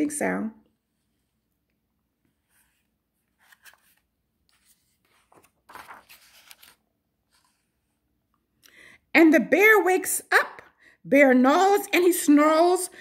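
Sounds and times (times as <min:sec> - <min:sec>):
paper page rustling: 0:02.2 - 0:07.8.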